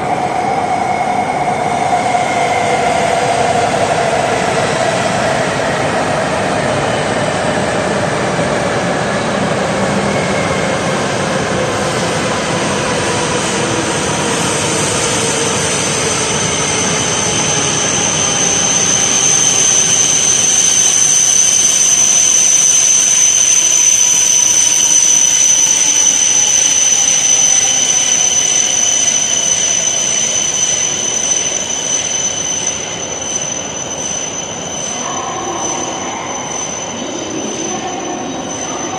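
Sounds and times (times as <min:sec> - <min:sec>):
high squeal of train brakes: 0:00.0 - 0:38.9
train motor whine: 0:12.4 - 0:38.9.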